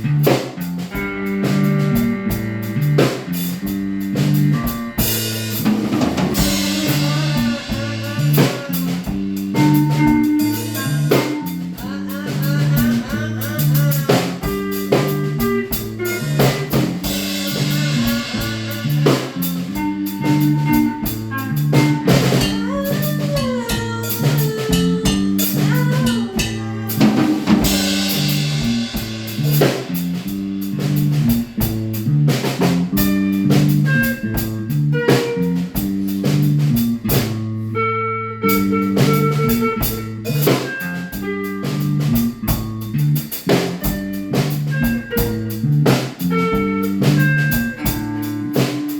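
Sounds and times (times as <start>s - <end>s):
drum kit beat: 0.0s - 37.8s, 38.4s - 48.9s
repeating bass line: 0.0s - 41.0s
lead guitar with bent notes: 0.0s - 48.9s.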